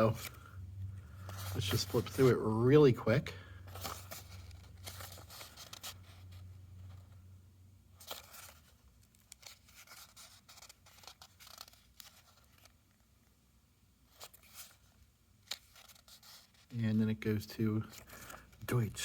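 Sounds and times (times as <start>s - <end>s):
paper pages flipping: 0.0s - 0.5s, 1.1s - 2.4s, 3.7s - 7.1s, 8.0s - 13.0s, 14.1s - 16.8s.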